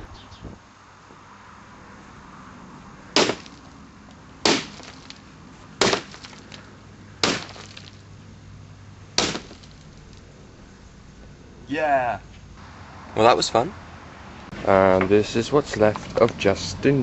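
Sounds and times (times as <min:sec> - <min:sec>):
wood struck hard: 0:03.2 - 0:03.7, 0:04.4 - 0:05.2, 0:05.8 - 0:06.6, 0:07.2 - 0:08.0, 0:09.2 - 0:09.9.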